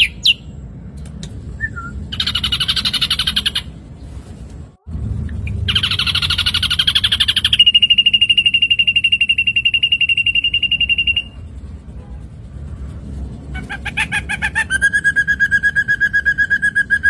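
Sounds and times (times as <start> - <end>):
bird song with buzzy trill: 0.0 - 0.7, 1.5 - 3.8, 5.4 - 11.6, 13.6 - 17.0
low background hum: 0.0 - 17.0.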